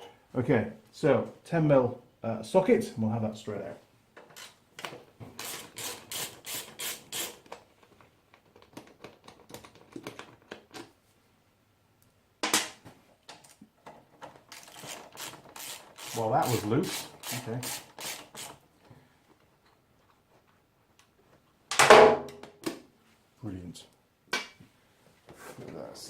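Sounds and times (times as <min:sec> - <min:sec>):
ratchet clicking: 0:14.5 - 0:18.6.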